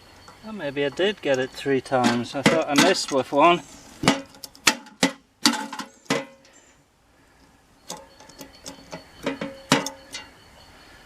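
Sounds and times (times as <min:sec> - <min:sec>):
sharp metal knocks: 0:00.9 - 0:03.2, 0:04.0 - 0:06.6, 0:07.9 - 0:10.4.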